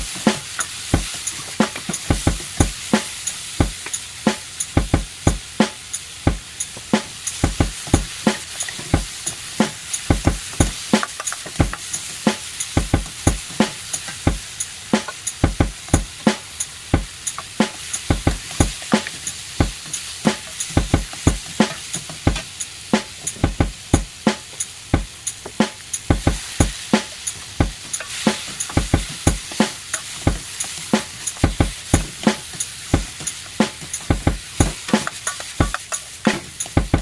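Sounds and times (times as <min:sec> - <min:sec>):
rice sizzling in a wok: 0:00.0 - 0:37.0
utensil clacking against wok: 0:00.0 - 0:37.0.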